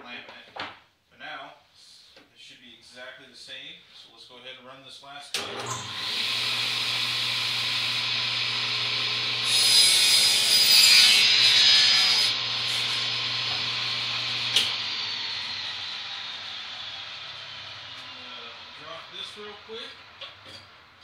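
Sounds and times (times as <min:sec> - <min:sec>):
table saw motor hum: 0:05.4 - 0:21.0
saw blade whine spinning down: 0:05.7 - 0:20.2
saw ripping a board: 0:05.8 - 0:17.0.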